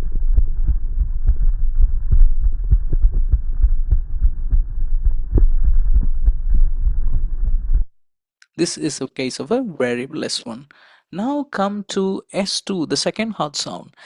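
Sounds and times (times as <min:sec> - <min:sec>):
heartbeat thumps: 0:00.0 - 0:07.9
low hum: 0:00.0 - 0:07.9.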